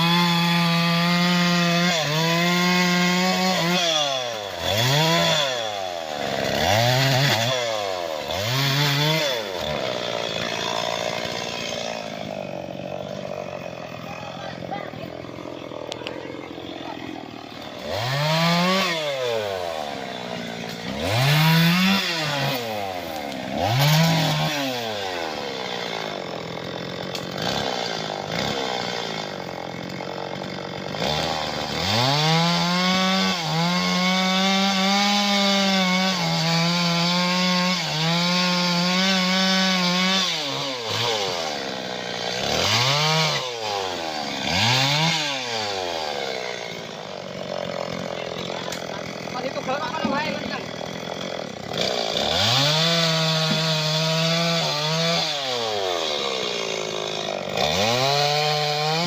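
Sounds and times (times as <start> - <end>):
chainsaw revving and cutting wood: 0.0 - 59.0.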